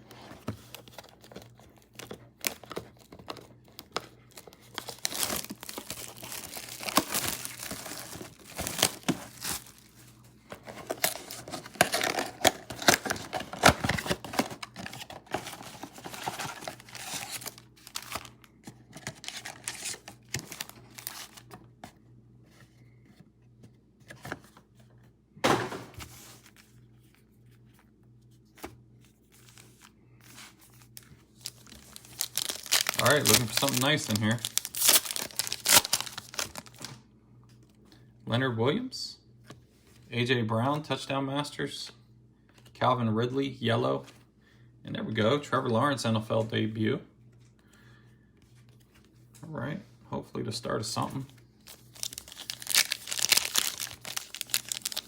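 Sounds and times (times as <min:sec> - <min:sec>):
plastic wrapping crinkling and tearing: 0:00.6 - 0:21.6, 0:30.6 - 0:37.0, 0:51.6 - 0:55.0.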